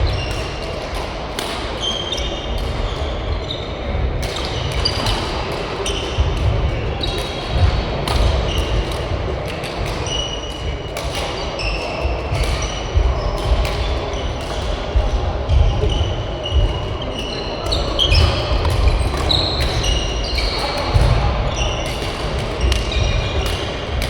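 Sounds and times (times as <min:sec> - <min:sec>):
rackets striking shuttlecock: 0:04.2 - 0:24.0
shoes squeaking on court floor: 0:13.4 - 0:23.6.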